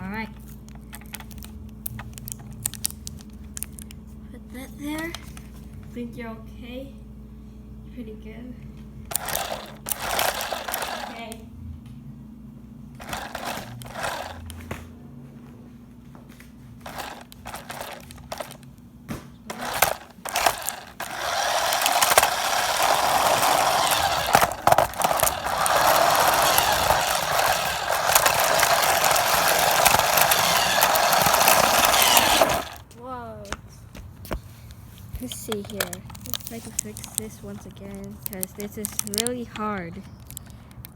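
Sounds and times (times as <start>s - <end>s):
toy car motor and wheels rattling: 0.2s - 5.6s, 9.1s - 11.4s, 13.0s - 14.6s, 16.8s - 18.7s, 19.5s - 32.8s, 35.2s - 40.9s
handling clicks and rustles: 0.3s - 4.0s, 9.1s - 11.4s, 13.0s - 14.7s, 16.8s - 32.9s, 34.3s - 40.9s.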